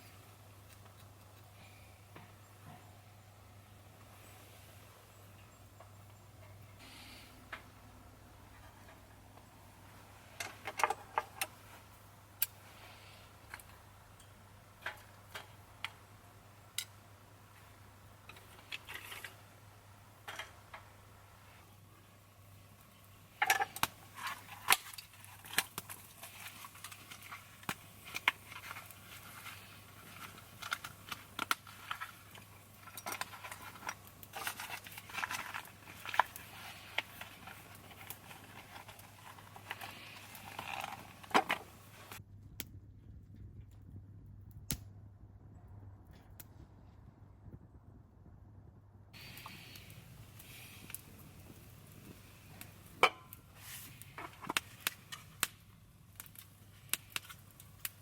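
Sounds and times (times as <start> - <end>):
faint low hum: 41.6 - 54.3.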